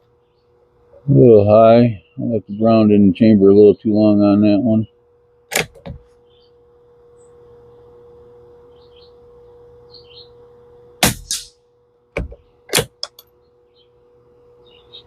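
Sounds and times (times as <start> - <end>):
faint steady hum: 0.0 - 15.0
rifle shot: 11.0 - 11.6.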